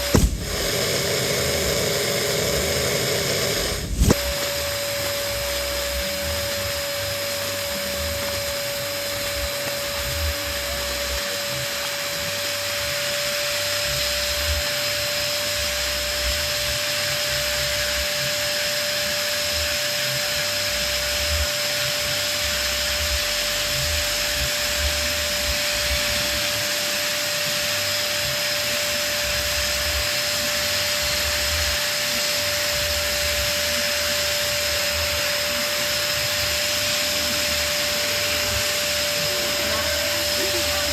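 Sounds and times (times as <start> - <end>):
rush of blown air: 0.0 - 4.4
electric balloon pump humming: 0.0 - 40.9.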